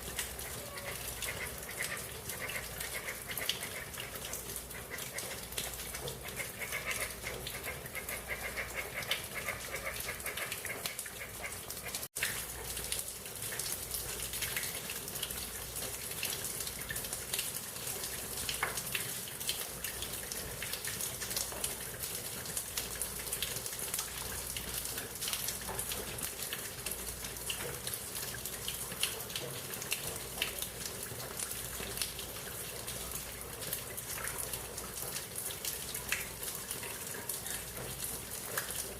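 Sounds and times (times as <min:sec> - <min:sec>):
rain falling on leaves: 0:00.0 - 0:38.9.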